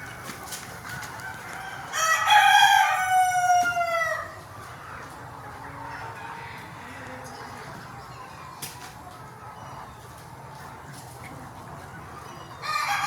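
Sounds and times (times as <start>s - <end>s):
faint chickens clucking: 0.0s - 13.0s
rooster crowing: 1.5s - 4.4s, 12.6s - 13.0s.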